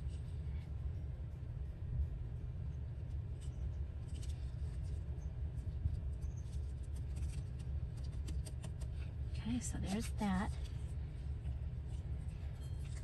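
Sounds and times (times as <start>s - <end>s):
steady low hum: 0.0s - 13.0s
paper rustling: 4.1s - 5.0s, 12.6s - 13.0s.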